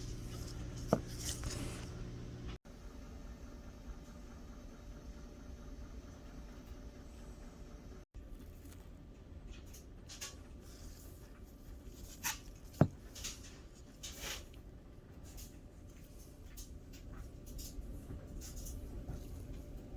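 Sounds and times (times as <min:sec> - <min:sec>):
rustling and scraping of coin holder: 0:00.0 - 0:02.0.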